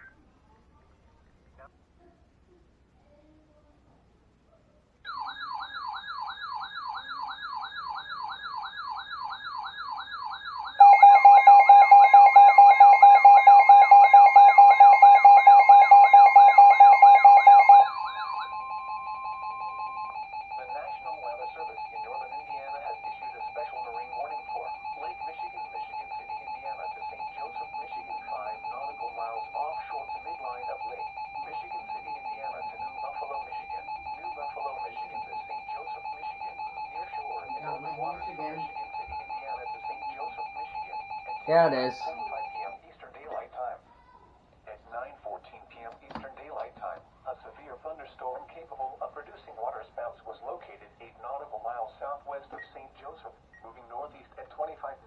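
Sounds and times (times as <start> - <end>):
fast warbling siren tone: 5.1 - 42.7
rapid beeping: 5.6 - 42.8
two-tone alert: 9.3 - 42.7.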